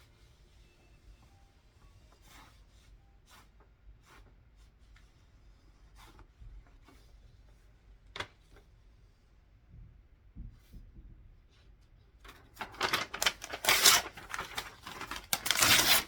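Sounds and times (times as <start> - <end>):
paper sheets rustling: 12.3 - 16.0.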